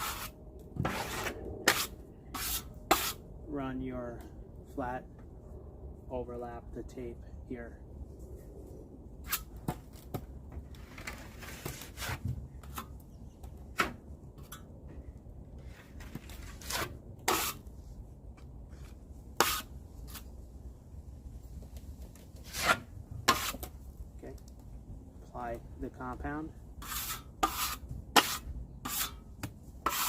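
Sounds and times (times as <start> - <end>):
taping knife scraping compound: 0.0 - 3.2, 9.2 - 10.2, 10.8 - 12.9, 15.6 - 17.7, 18.7 - 20.3, 22.0 - 23.7, 26.8 - 30.0.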